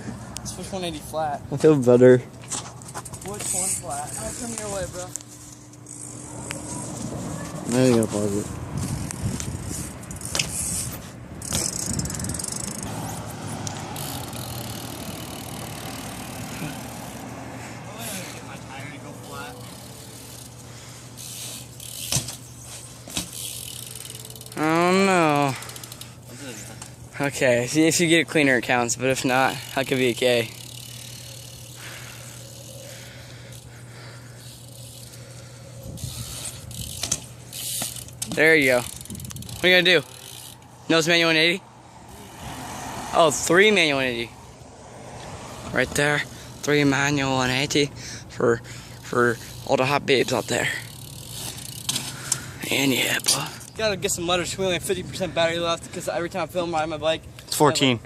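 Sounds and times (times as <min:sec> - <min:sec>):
bike hub ticking: 0:03.0 - 0:06.9, 0:08.8 - 0:41.4, 0:46.0 - 0:56.5
bike knocks: 0:21.9 - 0:23.5.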